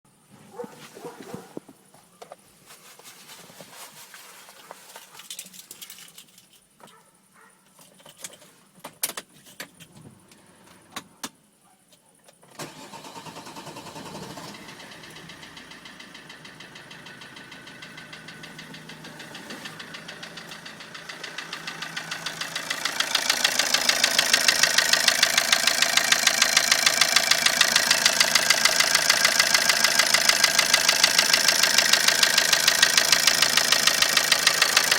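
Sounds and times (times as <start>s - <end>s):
diesel engine starting and idling: 12.5s - 34.9s
rapid engine knock: 14.6s - 34.9s.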